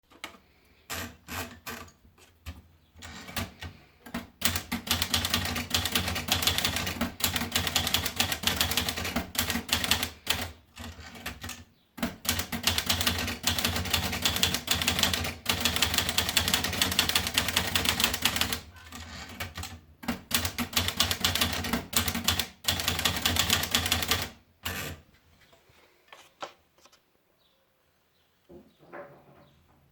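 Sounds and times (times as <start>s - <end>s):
manual typewriter typing: 0.1s - 25.0s.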